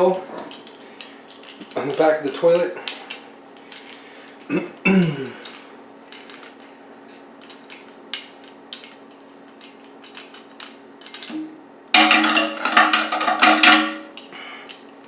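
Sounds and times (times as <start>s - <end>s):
steady low hum: 0.0s - 15.0s
toilet tank parts clicking: 11.0s - 14.8s.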